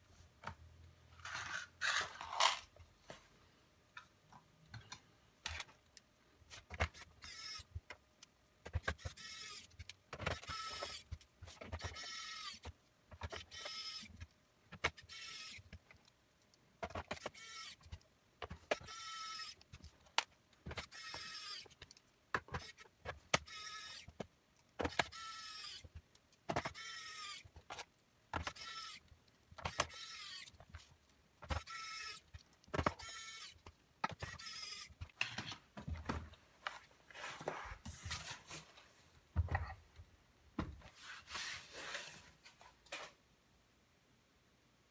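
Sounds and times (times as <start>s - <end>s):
electric screwdriver whirring: 34.2s - 35.0s.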